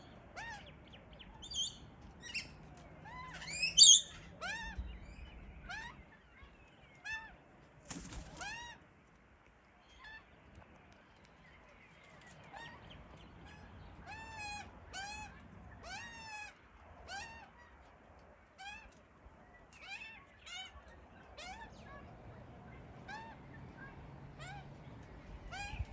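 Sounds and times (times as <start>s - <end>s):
baby magpies begging calls: 3.4s - 4.6s.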